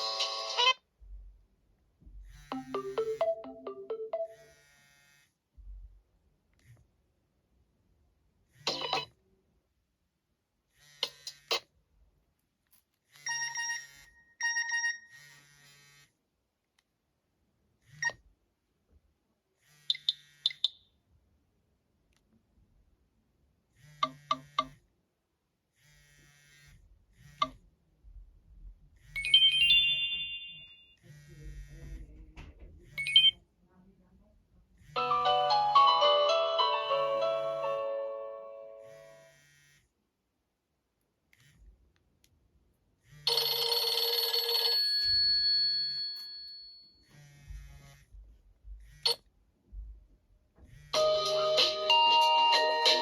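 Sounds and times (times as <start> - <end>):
electronic ringtone notes: 2.5 - 4.6, 29.2 - 30.9, 33.0 - 33.3, 35.0 - 39.2, 51.0 - 53.0.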